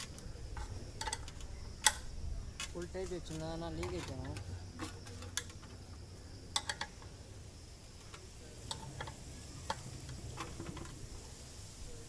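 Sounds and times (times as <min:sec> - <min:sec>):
tools clicking and tapping: 0:00.0 - 0:05.8, 0:06.5 - 0:07.1.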